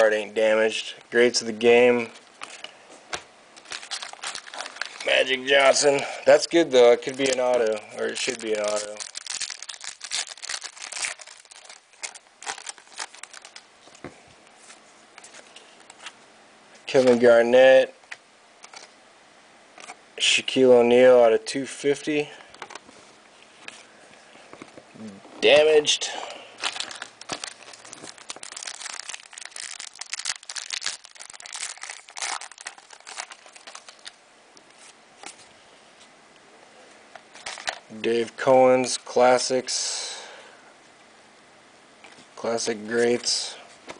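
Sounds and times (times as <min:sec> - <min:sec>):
card pack wrapper crinkling: 0:02.4 - 0:14.1, 0:18.6 - 0:19.0, 0:26.6 - 0:35.4, 0:37.3 - 0:37.9.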